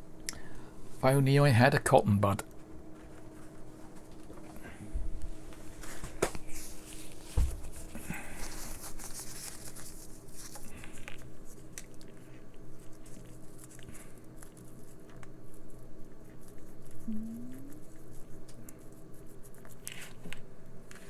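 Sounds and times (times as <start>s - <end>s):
faint steady hum: 0.0s - 21.0s
small clicks and scratching: 8.6s - 21.0s.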